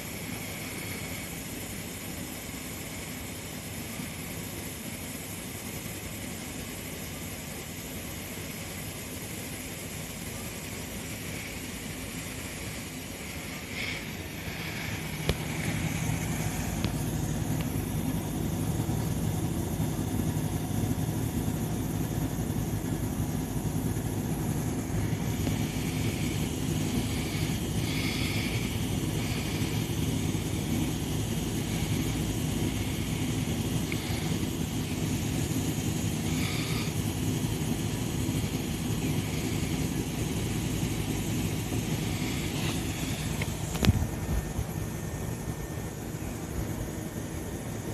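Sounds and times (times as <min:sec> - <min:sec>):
train electric hum: 0:00.0 - 0:47.9.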